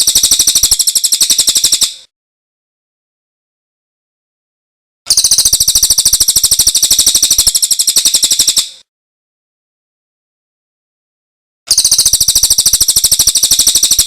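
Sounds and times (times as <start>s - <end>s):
songbird rapid trill: 0.0s - 2.1s, 5.1s - 8.8s, 11.7s - 14.0s.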